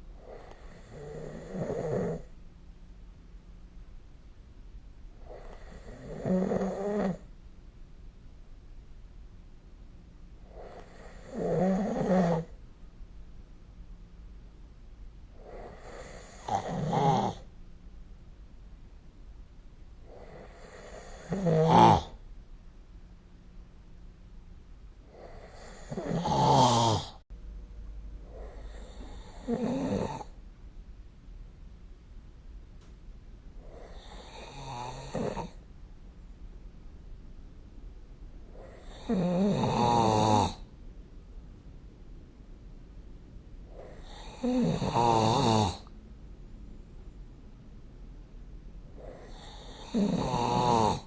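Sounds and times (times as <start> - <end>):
person snoring: 0.2 - 2.3, 5.2 - 7.3, 10.5 - 12.6, 15.4 - 17.5, 20.1 - 22.2, 25.1 - 27.2, 28.3 - 30.4, 33.6 - 35.6, 38.5 - 40.7, 43.7 - 45.9, 49.0 - 51.0.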